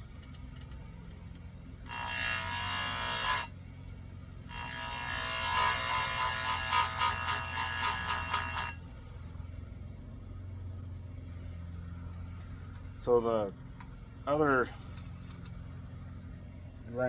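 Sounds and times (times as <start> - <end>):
low steady hum: 0.0 - 17.0
chain grinder grinding: 1.8 - 3.5, 4.5 - 8.8.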